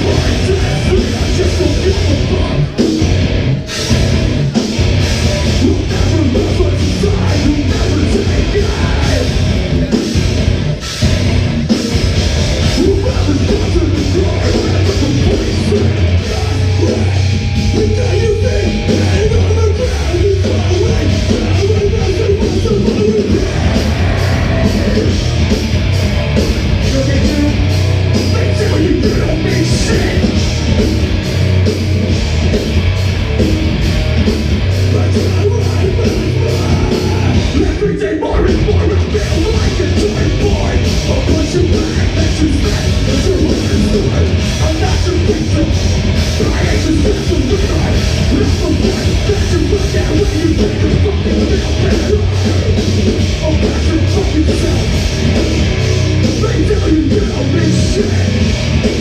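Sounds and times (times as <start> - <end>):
person singing: 0.0 - 2.8, 12.6 - 25.3, 34.9 - 55.0, 56.3 - 58.5
drum kit beat: 0.0 - 59.0
electric guitars: 0.0 - 59.0.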